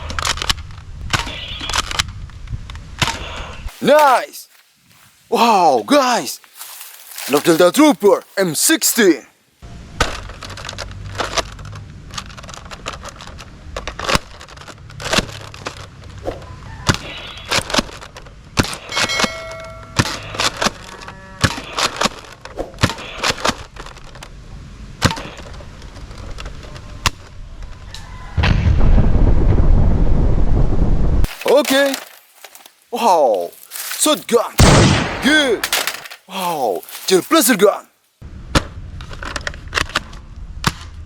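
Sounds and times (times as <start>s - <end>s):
loud low rumble: 28.4s - 31.3s.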